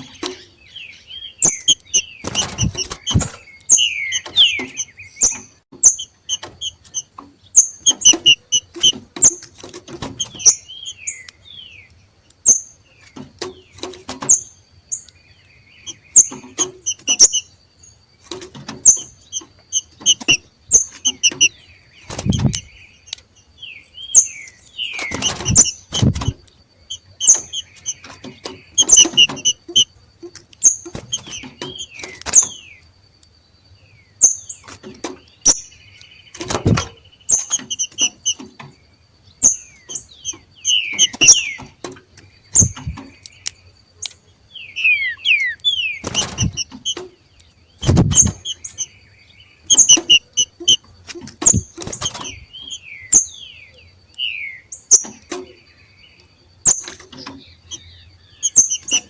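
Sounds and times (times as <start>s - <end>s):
birds giving sharp repeated calls: 0.0s - 32.9s, 34.1s - 59.0s
low thumps and rustles: 1.4s - 5.6s, 18.2s - 22.8s, 24.9s - 26.5s, 36.4s - 38.9s, 39.8s - 43.2s, 47.8s - 48.8s, 49.7s - 52.8s.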